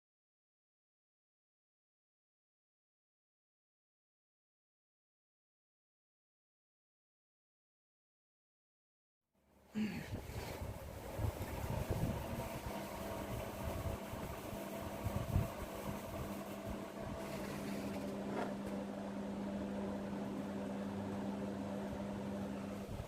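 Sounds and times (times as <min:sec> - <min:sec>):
machine hum: 0:09.7 - 0:23.0.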